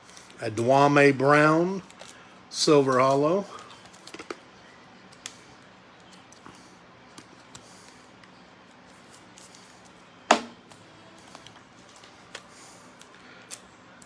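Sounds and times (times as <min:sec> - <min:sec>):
cards clicking and rustling: 0:03.7 - 0:04.4
sharp knock on table: 0:10.3 - 0:10.6.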